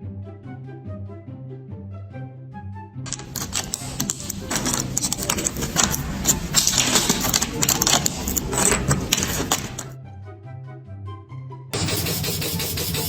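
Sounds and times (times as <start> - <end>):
mechanical clattering and rattling: 3.1 - 9.9.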